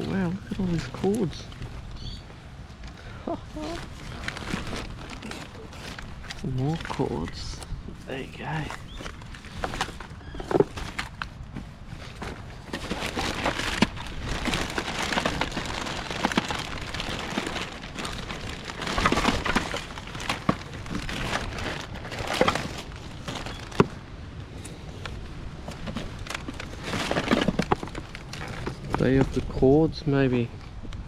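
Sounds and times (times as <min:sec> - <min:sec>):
plastic and cable rattling: 0:03.6 - 0:07.7, 0:08.4 - 0:24.0, 0:25.0 - 0:29.7.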